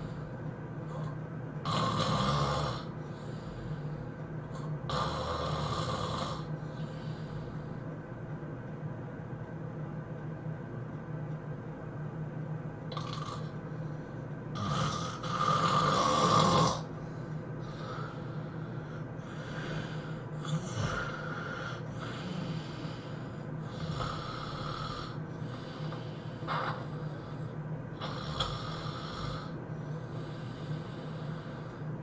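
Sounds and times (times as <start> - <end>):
low hum: 0.0 - 1.7, 2.8 - 4.9, 6.3 - 32.0
person snoring: 0.9 - 4.0, 4.6 - 7.8, 12.9 - 31.8.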